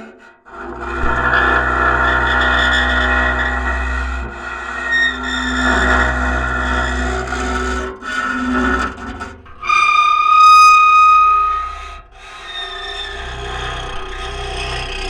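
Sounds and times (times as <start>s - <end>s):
rasping scrape: 0.0s - 15.0s.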